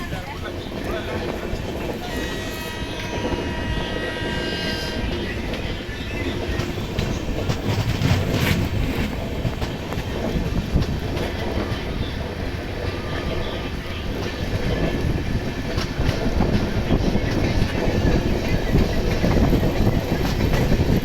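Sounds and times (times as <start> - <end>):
train wheels clattering over rails: 0.0 - 21.0.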